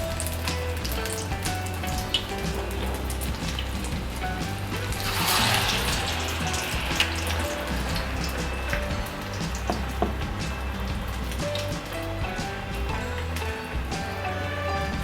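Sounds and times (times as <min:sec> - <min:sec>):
background music: 0:00.0 - 0:15.0
food sizzling in hot oil: 0:00.0 - 0:15.0.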